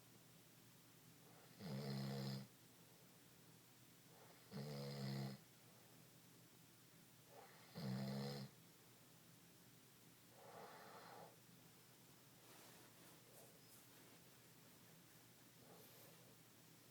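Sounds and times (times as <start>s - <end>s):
buzzing snores: 1.4s - 2.5s, 4.3s - 5.4s, 7.4s - 8.5s.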